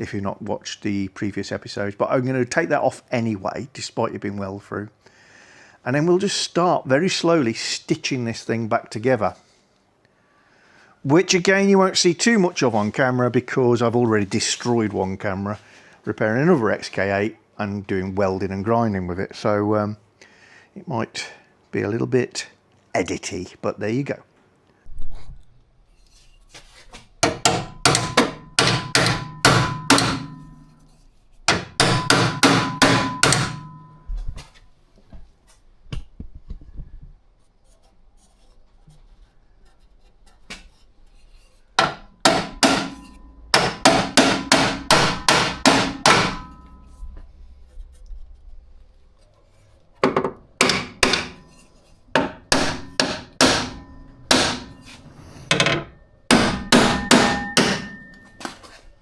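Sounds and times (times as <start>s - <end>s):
hammer on sheet steel: 27.2s - 34.1s, 41.8s - 47.0s, 50.6s - 55.0s, 56.3s - 58.4s.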